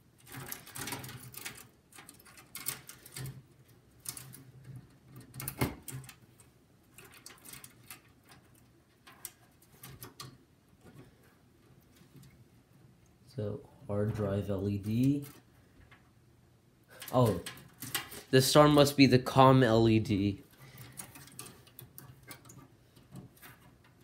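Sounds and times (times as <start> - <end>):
cables and connectors clicking: 0.1 - 12.4, 16.9 - 18.9, 19.8 - 24.0.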